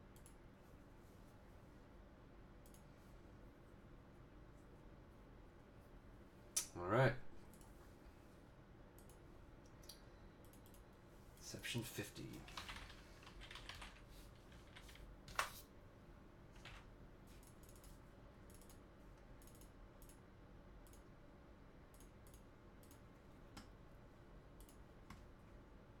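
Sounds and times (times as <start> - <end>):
computer keyboard and mouse clicks: 0.1 - 0.4, 2.6 - 2.9, 9.0 - 10.8, 12.3 - 15.6, 16.6 - 20.2, 20.8 - 21.1, 21.9 - 23.8, 24.6 - 25.3.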